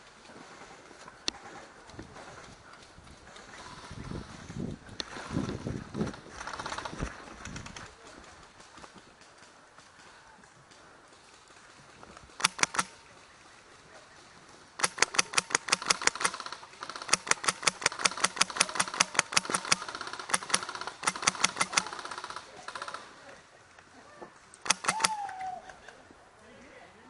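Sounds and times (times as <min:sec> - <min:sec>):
airsoft rifle firing: 0:14.8 - 0:23.0, 0:24.6 - 0:25.2.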